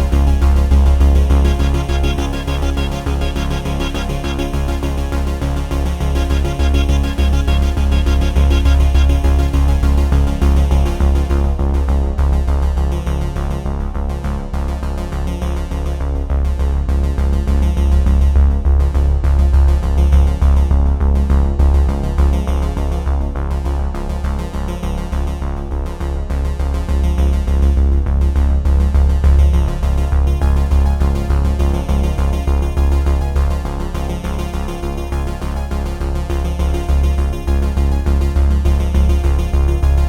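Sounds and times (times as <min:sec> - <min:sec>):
upbeat electronic synthesizer music: 0:00.0 - 0:11.6, 0:30.5 - 0:40.0.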